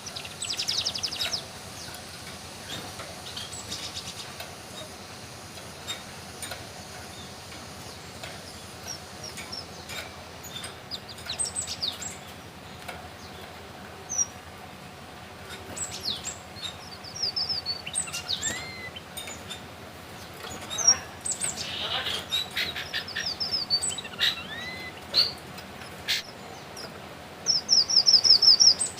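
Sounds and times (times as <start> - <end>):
finch singing high chirps: 0.0 - 14.8, 15.4 - 28.9.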